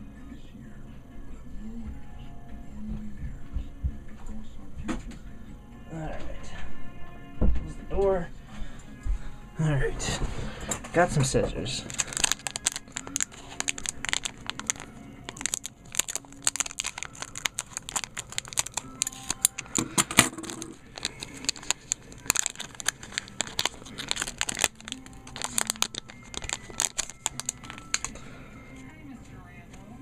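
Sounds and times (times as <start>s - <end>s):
plastic wrappers crinkling and tearing: 11.6s - 28.2s.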